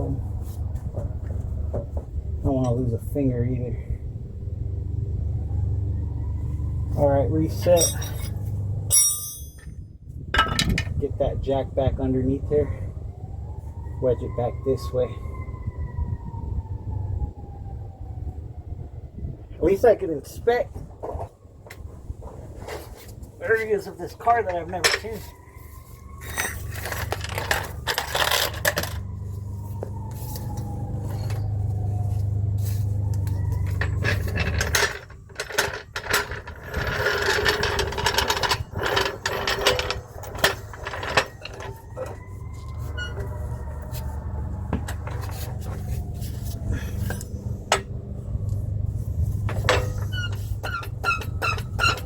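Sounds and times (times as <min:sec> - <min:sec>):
metal tools clanking and scraping: 0:07.5 - 0:09.8, 0:10.4 - 0:11.0, 0:22.6 - 0:29.0, 0:33.2 - 0:43.3, 0:49.3 - 0:52.0.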